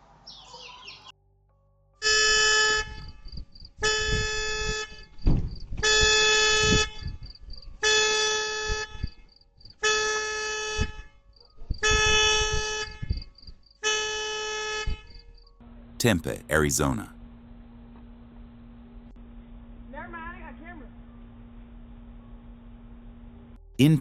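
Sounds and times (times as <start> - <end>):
vehicle horn blasts: 2.0 - 3.0, 3.8 - 5.0, 5.8 - 7.0, 7.8 - 9.0, 9.8 - 11.0, 11.8 - 13.0.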